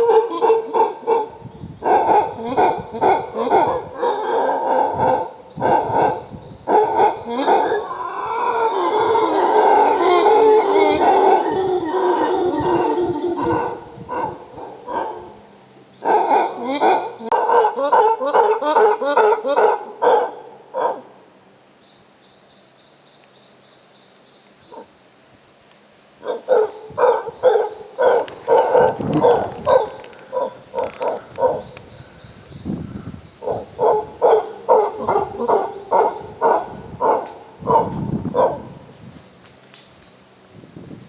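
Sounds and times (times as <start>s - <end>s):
deeper rough monkey calls: 0.0s - 20.1s, 26.2s - 38.7s
monkeys barking calls: 0.0s - 21.2s, 26.2s - 31.8s, 33.4s - 38.7s.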